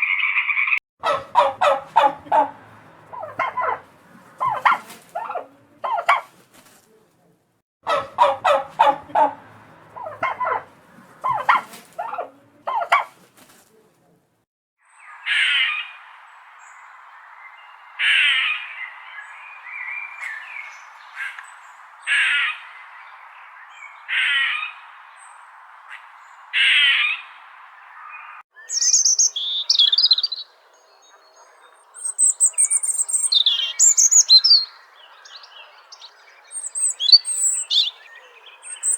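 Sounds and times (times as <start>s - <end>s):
bird calls: 0.0s - 0.8s, 14.9s - 38.9s
high bird chirping and twittering: 28.6s - 38.9s.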